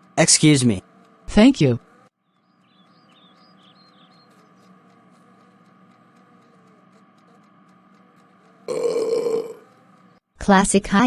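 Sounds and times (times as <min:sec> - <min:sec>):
light ticks: 0:02.8 - 0:08.6
cartoon burp sound effect: 0:08.7 - 0:09.6.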